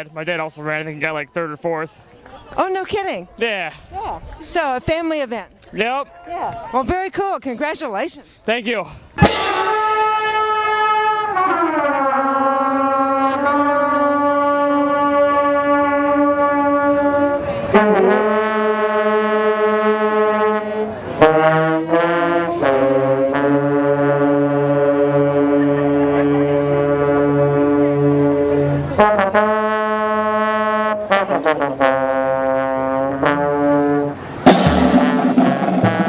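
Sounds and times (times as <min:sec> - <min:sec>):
brass chords: 0:09.2 - 0:36.0.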